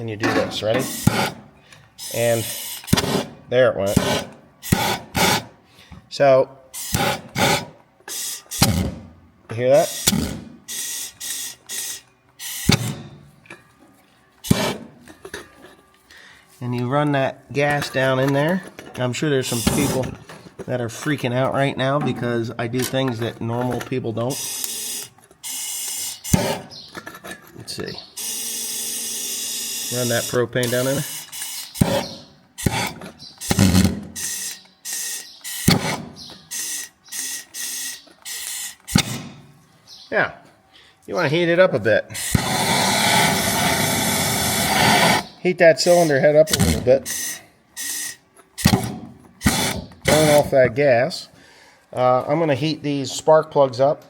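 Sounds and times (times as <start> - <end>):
torch hissing: 42.2 - 45.3.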